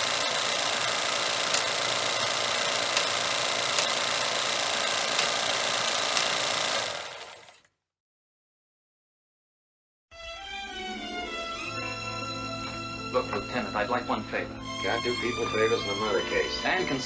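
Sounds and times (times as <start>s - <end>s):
mechanical running noise with hiss: 0.0s - 7.6s
sharp mechanical click: 0.0s - 7.6s.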